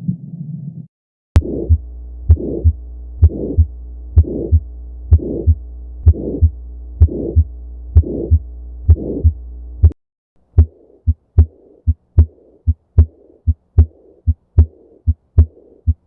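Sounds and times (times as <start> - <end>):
blowing heart murmur: 1.4 - 9.4, 10.6 - 16.0
heartbeat through stethoscope: 1.4 - 10.0, 10.6 - 16.0
steady low hum: 1.4 - 16.0.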